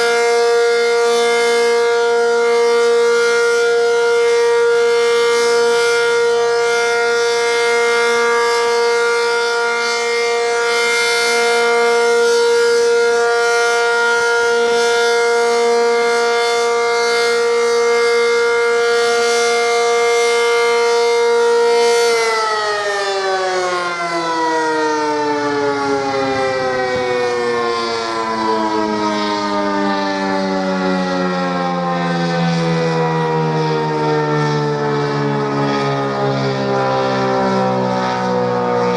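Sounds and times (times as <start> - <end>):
warning siren: 0.0 - 38.9.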